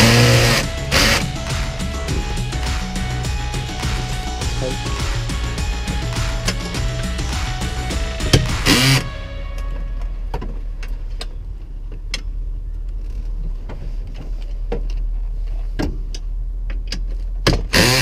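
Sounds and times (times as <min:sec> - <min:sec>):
clicks and knocks on dashboard parts: 0:15.7 - 0:18.0.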